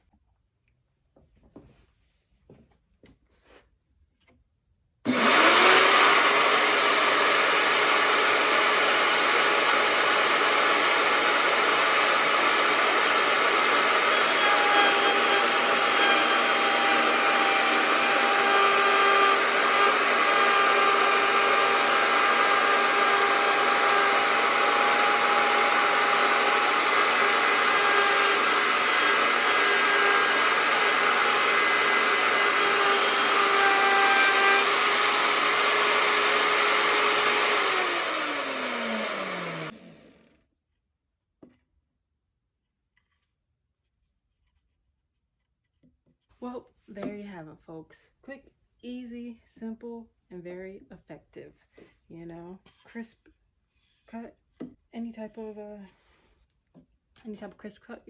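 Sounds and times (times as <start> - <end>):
wood router running: 5.1 - 40.4.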